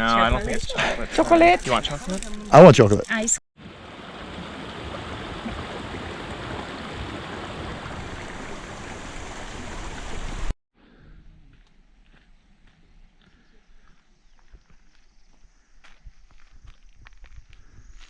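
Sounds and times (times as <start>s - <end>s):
rushing water: 3.6s - 10.6s.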